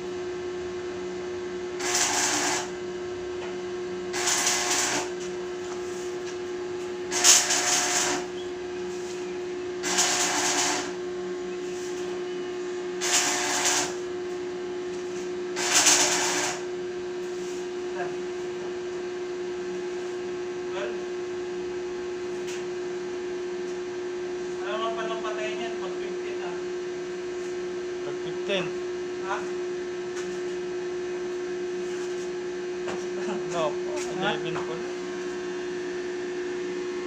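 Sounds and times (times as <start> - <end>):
steady hum: 0.0 - 37.0
arc welding crackling bursts: 1.8 - 2.8, 4.1 - 5.2, 7.1 - 8.3, 9.8 - 11.0, 13.0 - 14.0, 15.6 - 16.7.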